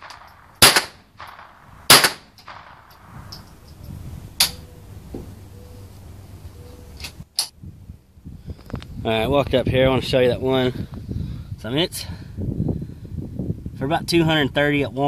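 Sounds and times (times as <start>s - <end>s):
rifle shots: 0.0s - 3.4s.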